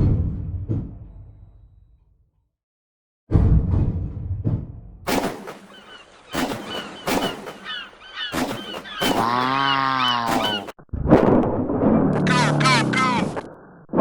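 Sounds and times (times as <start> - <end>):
tank gun blasts: 5.1 - 9.6
high squeaky chirps: 5.7 - 10.7.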